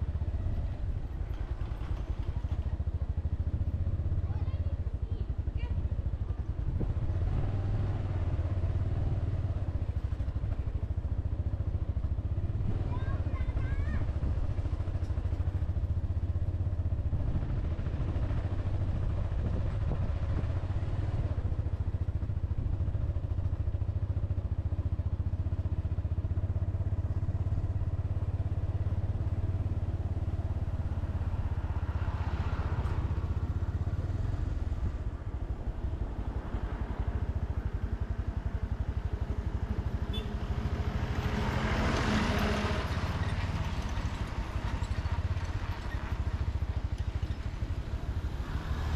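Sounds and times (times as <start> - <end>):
motorcycle engine droning: 14.0 - 48.9.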